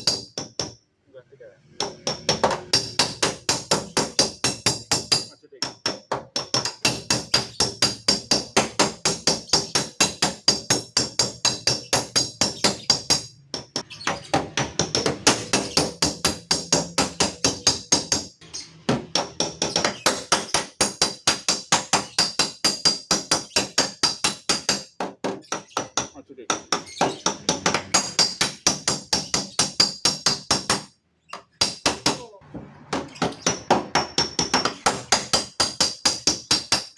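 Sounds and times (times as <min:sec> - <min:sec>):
hammer tapping on sheet metal: 0:00.0 - 0:00.8, 0:01.8 - 0:36.9.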